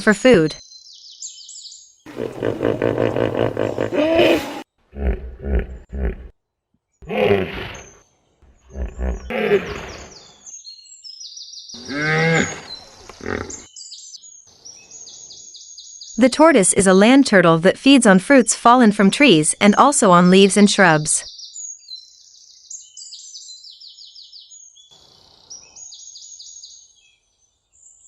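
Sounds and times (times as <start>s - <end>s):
hippopotamus calling: 2.1s - 6.3s, 11.8s - 13.7s
birds chirping faintly: 6.9s - 28.0s.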